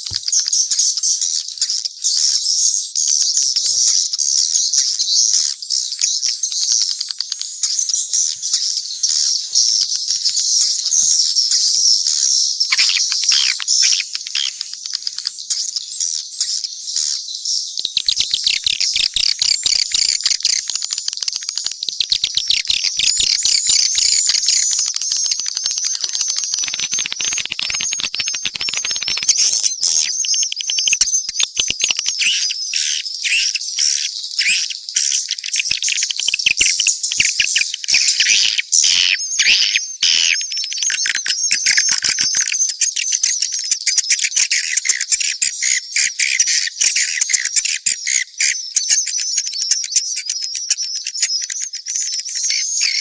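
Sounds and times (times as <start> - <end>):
swiftlets twittering chirps: 0.0 - 17.2, 17.8 - 43.2
fast rattling clicks: 18.1 - 32.1.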